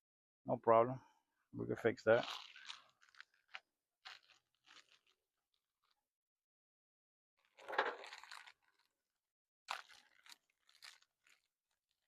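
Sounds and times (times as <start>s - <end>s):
rustling and crunching handling noise: 1.8s - 6.1s, 7.4s - 12.0s.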